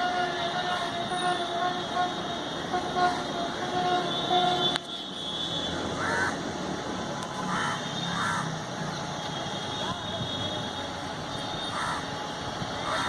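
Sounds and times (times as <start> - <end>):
locomotive horn toots: 0.0 - 6.0
crow cawing: 6.0 - 6.4, 7.5 - 8.6, 11.7 - 12.1.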